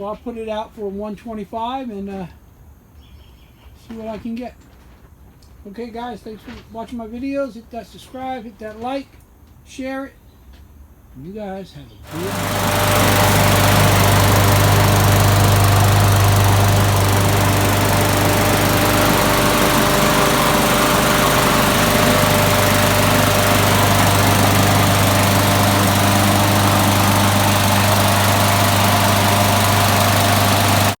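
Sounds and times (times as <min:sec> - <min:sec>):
lawnmower engine running: 0:12.1 - 0:31.0.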